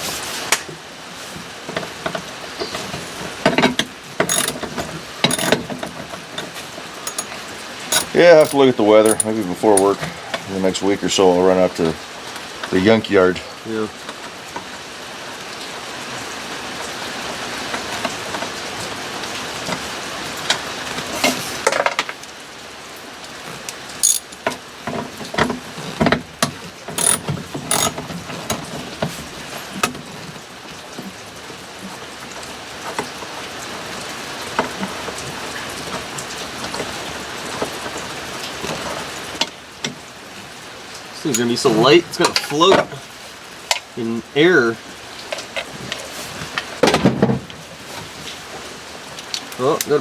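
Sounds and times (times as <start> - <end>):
metal parts knocking: 3.5 - 10.0, 24.0 - 24.6, 26.4 - 28.8
ratchet wrench clicking: 4.2 - 5.6, 7.1 - 9.9, 24.0 - 24.4, 27.0 - 28.7.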